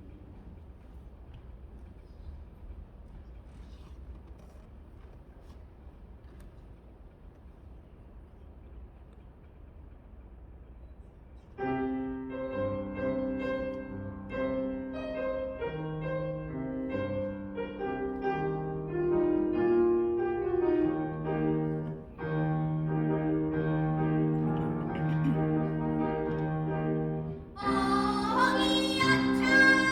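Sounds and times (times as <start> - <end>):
piano melody: 11.7 - 29.9.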